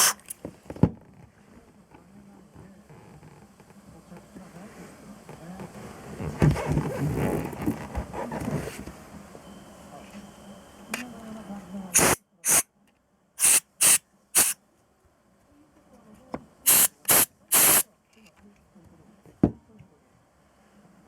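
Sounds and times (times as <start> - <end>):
hissing spray blasts: 11.9 - 12.6, 13.4 - 14.6, 16.7 - 17.8.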